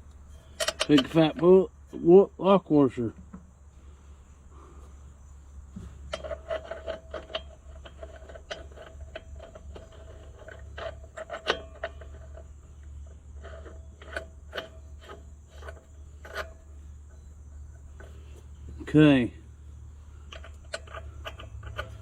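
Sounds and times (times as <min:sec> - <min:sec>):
metal clicks: 0:00.0 - 0:01.6, 0:06.0 - 0:19.0, 0:20.0 - 0:22.0
nut scraping ringing squeal: 0:00.0 - 0:02.3, 0:02.9 - 0:22.0.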